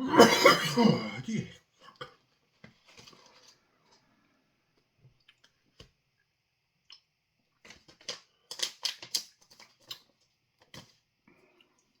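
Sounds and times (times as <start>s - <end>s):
crackling and clicking handling noises: 2.5s - 4.1s, 6.9s - 12.0s.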